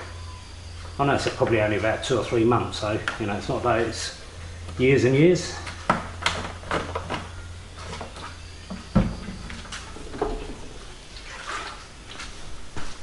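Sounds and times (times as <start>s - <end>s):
low steady hum: 0.0s - 13.0s
scraping or rustling: 9.2s - 12.5s.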